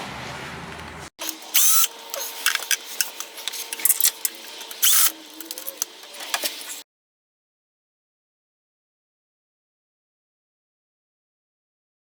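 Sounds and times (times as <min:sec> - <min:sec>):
socket ratchet clicking: 0:01.2 - 0:06.8.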